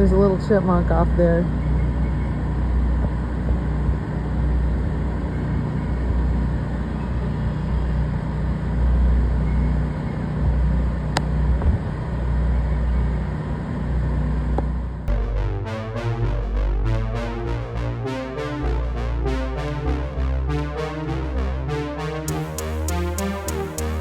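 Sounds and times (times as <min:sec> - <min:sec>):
generators droning: 0:15.1 - 0:24.0.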